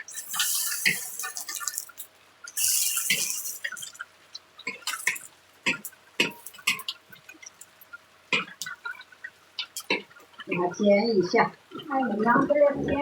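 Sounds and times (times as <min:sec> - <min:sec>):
water splashing and hissing: 0:00.0 - 0:04.0.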